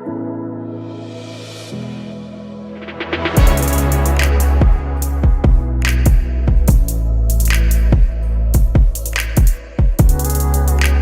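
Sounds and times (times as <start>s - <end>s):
steady drum beat: 3.2s - 10.8s
heavy electronic bass line: 3.2s - 11.0s.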